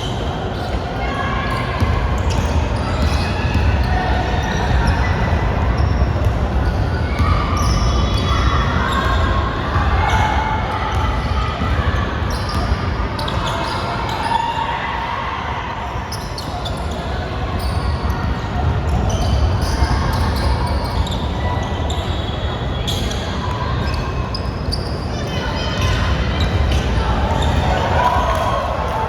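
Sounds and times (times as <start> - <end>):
sneakers squeaking: 0.0 - 14.8, 15.9 - 29.0
players' voices: 0.0 - 29.0
basketball bouncing on court: 1.8 - 10.2.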